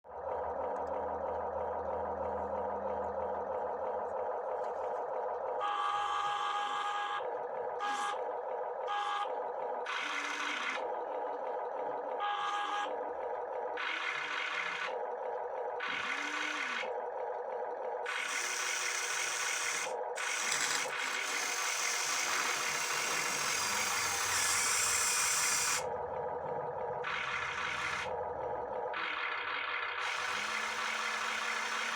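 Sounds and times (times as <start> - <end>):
toy excavator electric whine: 5.6 - 8.2, 8.8 - 13.0, 13.8 - 15.0, 15.7 - 17.0, 18.0 - 26.0, 27.0 - 28.2, 29.0 - 31.9
motors whirring: 9.9 - 10.9, 13.8 - 15.0, 15.7 - 17.0, 18.1 - 28.2, 28.9 - 31.9.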